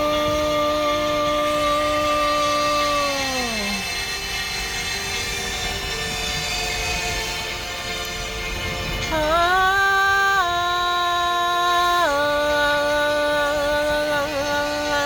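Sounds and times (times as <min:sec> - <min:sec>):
woman singing wordless notes: 0:00.0 - 0:04.1, 0:09.1 - 0:15.0
sustained musical backing: 0:00.0 - 0:15.0.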